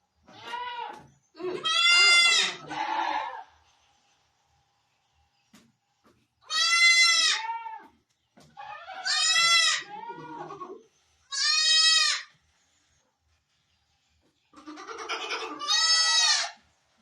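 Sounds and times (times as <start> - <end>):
goat bleating: 0.3 - 3.5, 6.4 - 7.9, 8.6 - 12.3, 14.6 - 16.6.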